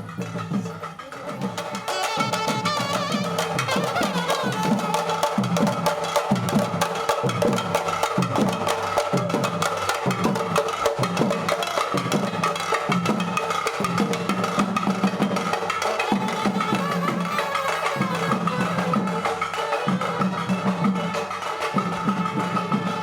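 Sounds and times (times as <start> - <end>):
fast steady drumming: 0.0 - 23.0
held melodic tones: 1.6 - 5.6.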